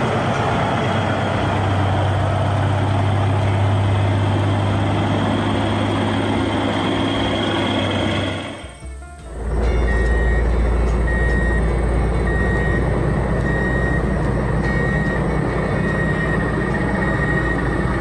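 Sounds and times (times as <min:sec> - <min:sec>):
heavy vehicle engine running: 0:00.0 - 0:18.0
reversing alarm beeping: 0:04.1 - 0:18.0.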